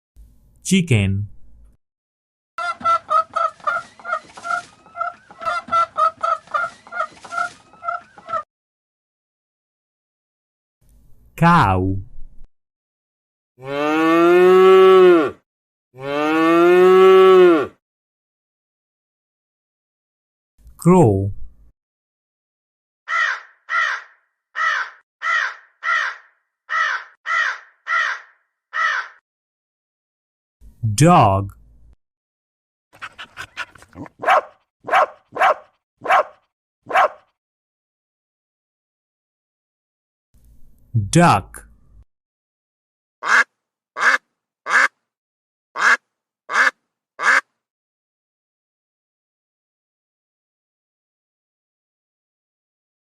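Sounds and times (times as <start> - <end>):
chicken clucking: 2.6 - 8.4
crow cawing: 23.1 - 29.2, 43.2 - 43.4, 44.0 - 44.9, 45.8 - 47.4.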